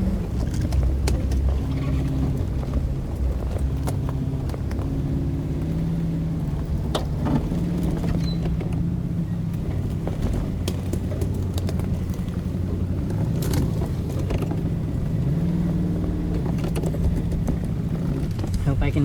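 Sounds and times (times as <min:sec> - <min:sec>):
vehicle engine on dirt track: 0:00.0 - 0:19.0
knocks and rattles: 0:09.5 - 0:19.0.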